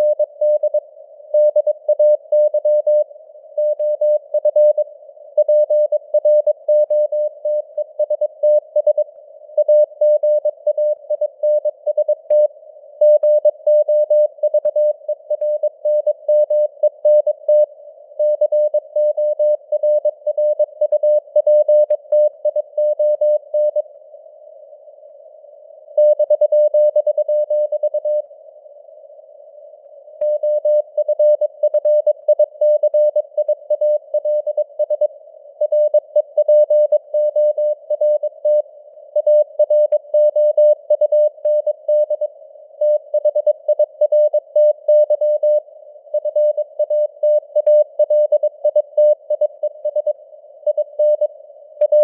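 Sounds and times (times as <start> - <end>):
faint radio noise hiss: 17.3 - 43.7, 44.4 - 52.0.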